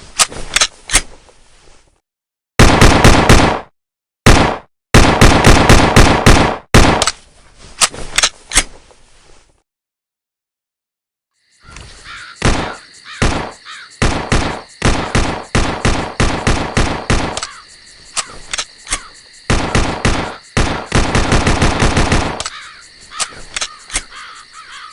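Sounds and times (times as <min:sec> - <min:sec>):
pistol gunshots: 0:02.6 - 0:03.7, 0:04.3 - 0:07.1, 0:12.4 - 0:17.5, 0:19.5 - 0:22.4
crows cawing: 0:11.6 - 0:14.0, 0:17.3 - 0:19.2, 0:22.4 - 0:24.9.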